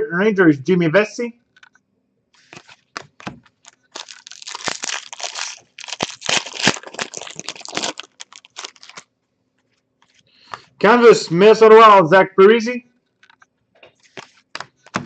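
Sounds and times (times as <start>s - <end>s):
foil packaging crinkling: 2.4s - 9.1s.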